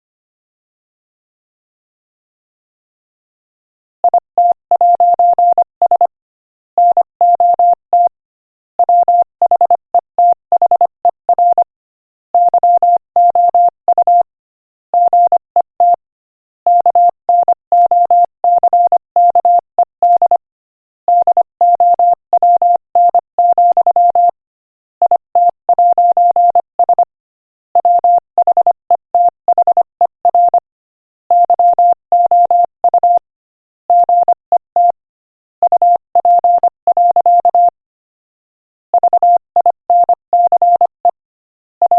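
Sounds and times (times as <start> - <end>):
morse code beeps: 4.0 - 6.1, 6.8 - 8.1, 8.8 - 11.7, 12.4 - 14.3, 15.0 - 16.0, 16.7 - 20.4, 21.1 - 24.4, 25.0 - 27.1, 27.8 - 30.6, 31.3 - 33.3, 33.9 - 35.0, 35.6 - 37.8, 39.0 - 41.2.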